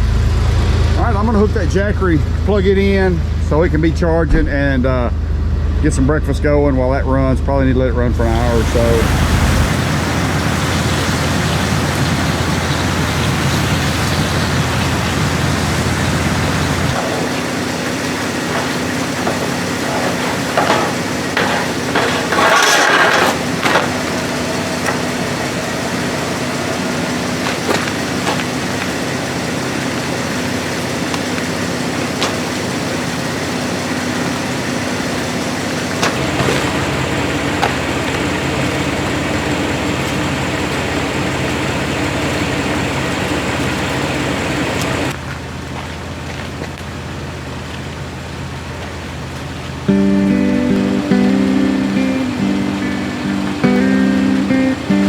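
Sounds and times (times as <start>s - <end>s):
car engine idling: 0.0s - 55.0s
rustling noise: 16.9s - 25.2s.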